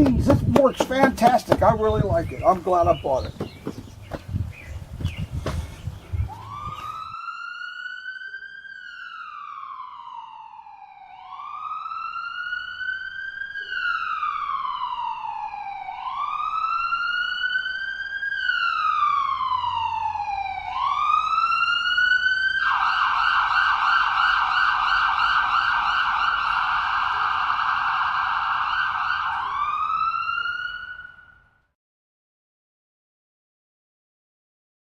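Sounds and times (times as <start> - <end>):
siren rapid yelp: 6.1 - 31.5
siren wailing: 6.1 - 31.5.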